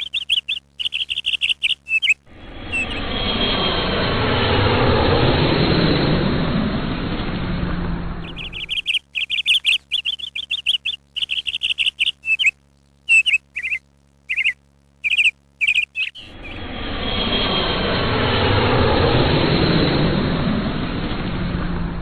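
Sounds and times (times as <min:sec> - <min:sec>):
bird chirping: 0:00.0 - 0:03.0, 0:08.2 - 0:16.6.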